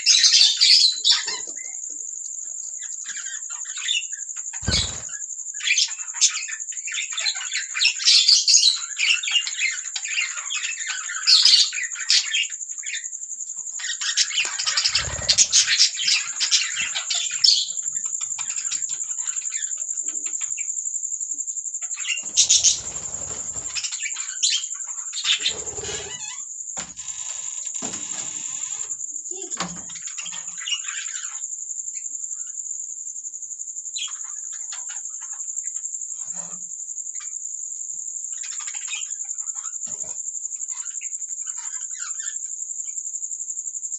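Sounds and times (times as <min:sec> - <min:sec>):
budgerigars chirping and warbling: 0:00.0 - 0:13.1, 0:13.8 - 0:19.7, 0:21.9 - 0:26.4.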